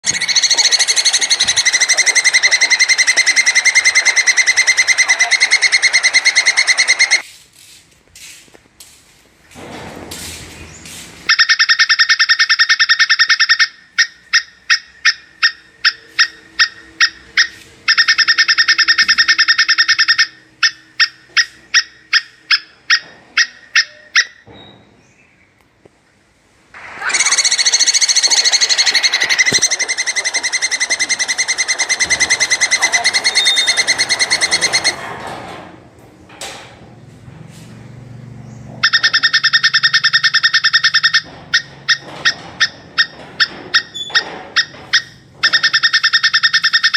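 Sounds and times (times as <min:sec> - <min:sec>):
harsh noisy squirrel call: 0:00.0 - 0:07.2, 0:26.8 - 0:35.0
squirrel chattering trills: 0:00.0 - 0:07.2, 0:11.3 - 0:24.3, 0:27.0 - 0:35.0, 0:38.8 - 0:43.2.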